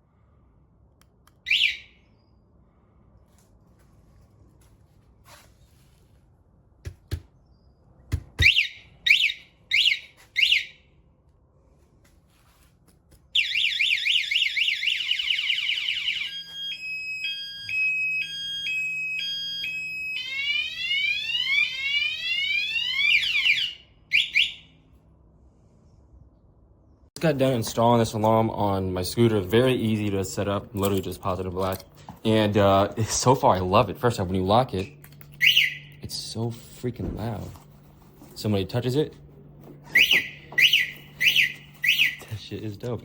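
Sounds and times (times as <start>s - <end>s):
loud alarm siren: 1.4s - 2.0s, 8.4s - 11.0s, 13.4s - 24.8s, 34.1s - 36.3s, 39.2s - 42.5s
alarm warning chirps: 1.4s - 2.2s, 8.4s - 11.0s, 13.4s - 24.8s, 33.8s - 36.7s, 39.1s - 42.6s.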